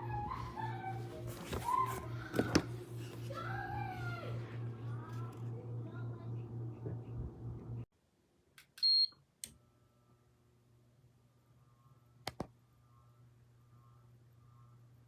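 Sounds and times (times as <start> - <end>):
low steady hum: 0.0 - 7.9.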